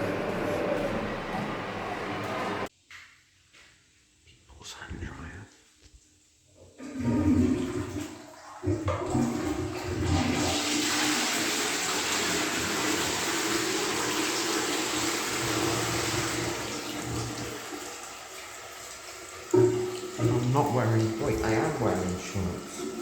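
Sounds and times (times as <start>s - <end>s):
electric hand dryer blowing: 0.0s - 2.7s, 9.0s - 23.0s.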